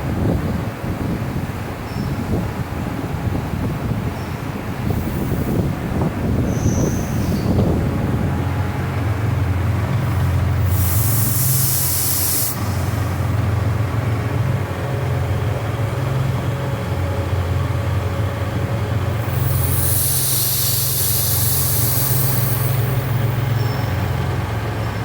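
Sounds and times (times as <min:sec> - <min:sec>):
high air hiss: 0:09.9 - 0:13.4, 0:19.1 - 0:24.0.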